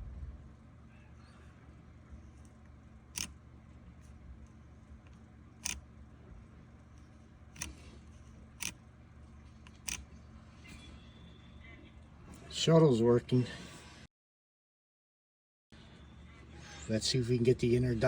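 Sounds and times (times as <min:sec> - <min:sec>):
faint steady hum: 0:00.0 - 0:14.1.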